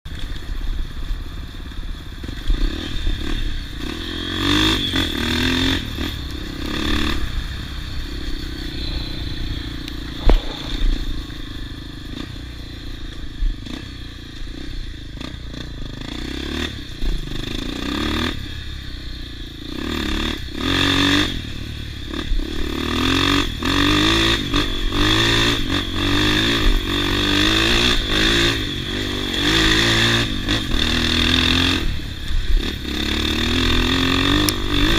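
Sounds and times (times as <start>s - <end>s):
off-road motorcycle engine revving: 0.1s - 34.9s
sharp knock: 10.0s - 11.3s.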